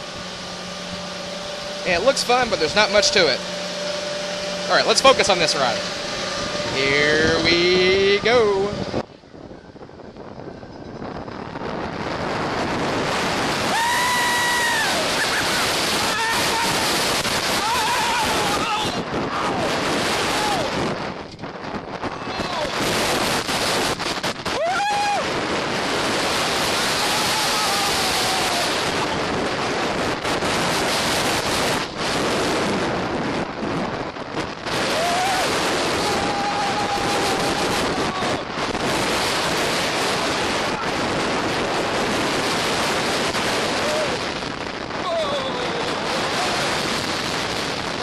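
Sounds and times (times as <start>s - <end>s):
high-pitched tone: 0.0s - 9.0s
faint wavering whine: 0.0s - 48.0s
rushing wind on microphone: 0.0s - 48.0s.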